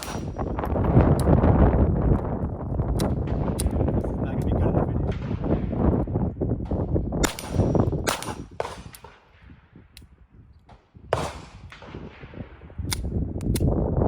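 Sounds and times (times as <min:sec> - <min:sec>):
pistol shots cracking: 0:00.0 - 0:01.2, 0:06.7 - 0:09.5, 0:10.7 - 0:12.4.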